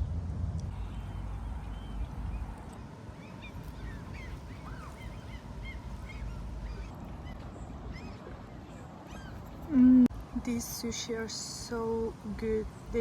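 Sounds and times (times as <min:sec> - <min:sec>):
steady low rumble: 0:00.0 - 0:13.0
birds giving quick calls: 0:00.9 - 0:09.7.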